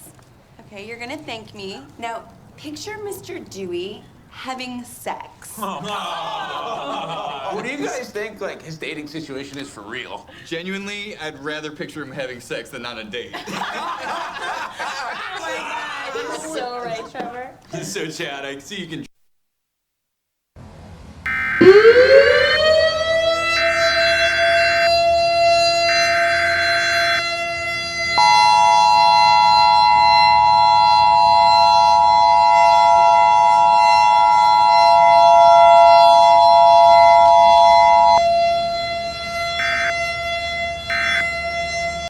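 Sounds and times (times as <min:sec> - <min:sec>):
civil defense siren: 0:21.3 - 0:42.0.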